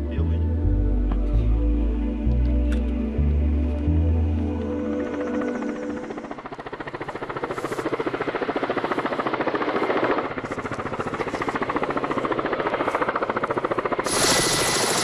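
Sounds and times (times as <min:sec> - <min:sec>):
helicopter rotor beating: 0:04.8 - 0:15.0
high steady whine: 0:14.0 - 0:15.0.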